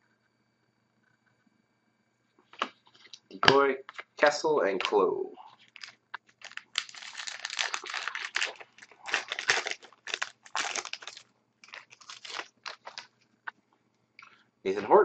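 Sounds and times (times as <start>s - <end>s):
wrapper tearing and crinkling: 5.6s - 13.1s.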